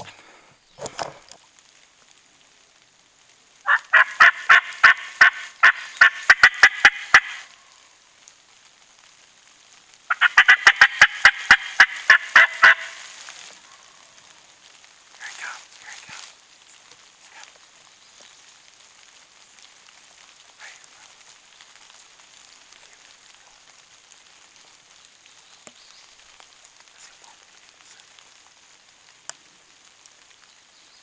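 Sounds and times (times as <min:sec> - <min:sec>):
raspy turkey calling: 0:03.6 - 0:07.6, 0:10.1 - 0:14.2.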